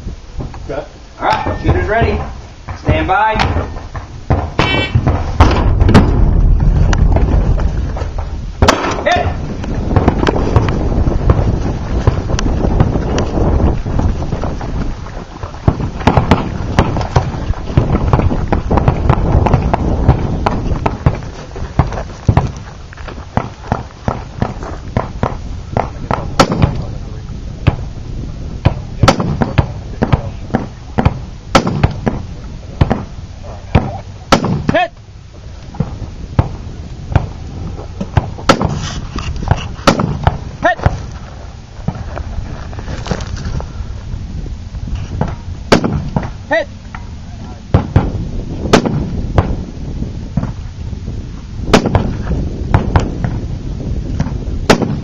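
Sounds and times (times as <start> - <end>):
gunshots: 2.9 - 7.4, 8.6 - 12.2, 15.6 - 22.6, 23.4 - 26.9, 28.6 - 32.2, 33.7 - 34.9, 38.2 - 38.8, 39.8 - 41.1, 45.7 - 46.3, 47.7 - 49.6, 51.7 - 53.1, 54.7 - 55.0.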